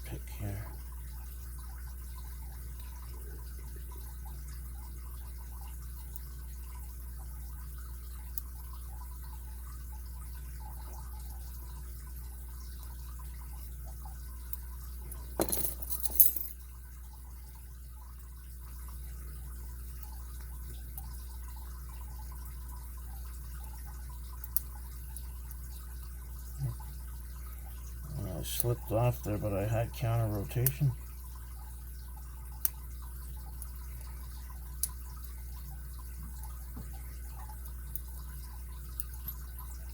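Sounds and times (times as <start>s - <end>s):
steady low hum: 17.2s - 39.9s.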